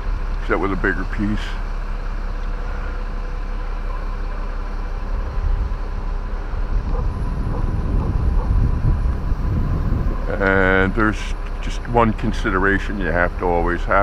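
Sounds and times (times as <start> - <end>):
engine low rumble: 0.0 - 14.0
wind buffeting microphone: 5.0 - 14.0.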